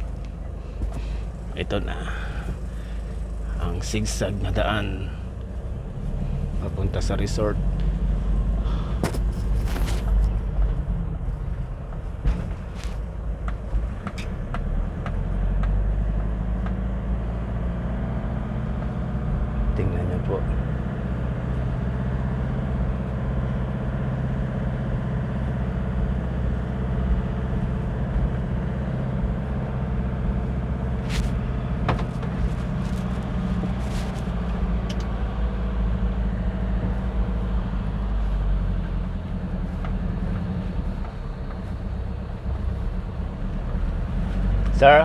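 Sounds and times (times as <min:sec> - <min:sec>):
vehicle engine and road noise: 0:00.0 - 0:45.0.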